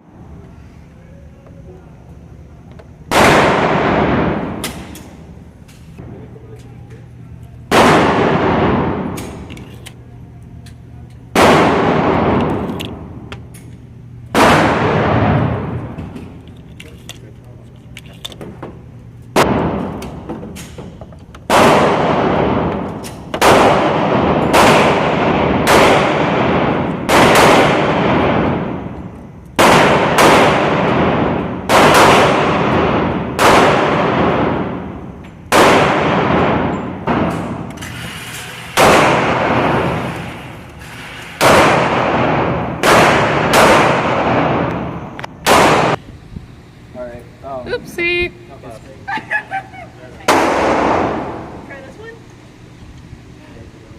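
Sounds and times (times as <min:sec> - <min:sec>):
gunshots with ringing decay: 0:03.1 - 0:05.4, 0:07.7 - 0:09.6, 0:11.4 - 0:13.2, 0:14.3 - 0:16.2, 0:19.4 - 0:20.3, 0:21.5 - 0:37.8, 0:38.8 - 0:40.6, 0:41.4 - 0:46.0, 0:50.3 - 0:51.6.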